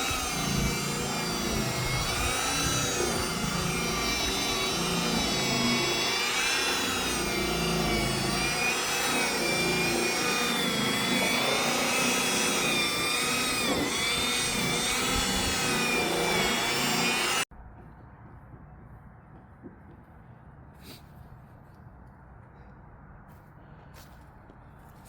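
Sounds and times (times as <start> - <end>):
electric buffer motor whine: 0.0 - 17.5.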